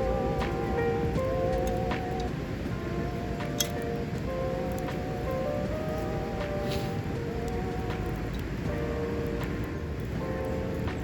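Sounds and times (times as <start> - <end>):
slow melody of wavering notes: 0.0 - 11.0
steady noise bed: 0.0 - 11.0.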